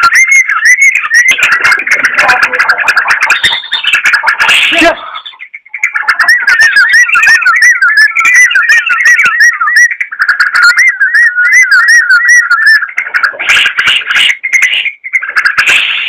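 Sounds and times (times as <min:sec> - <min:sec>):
bird singing whistled notes: 0:04.8 - 0:13.0.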